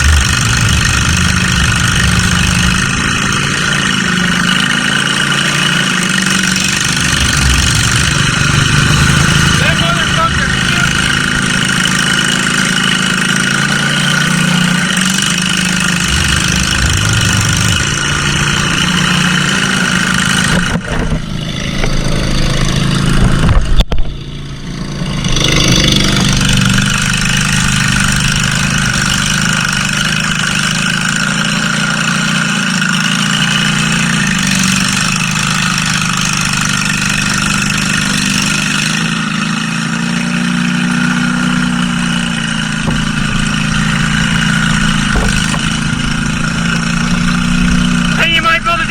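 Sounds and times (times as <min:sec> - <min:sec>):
loud jolt: 0:00.0 - 0:09.6, 0:10.6 - 0:21.8, 0:41.8 - 0:48.1
small engine running: 0:00.0 - 0:48.9.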